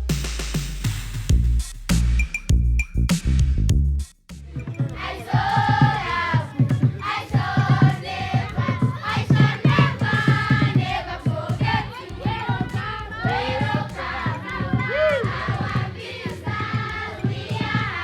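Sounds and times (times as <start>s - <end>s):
steady beat: 0.0s - 18.0s
voices singing together: 4.6s - 18.0s.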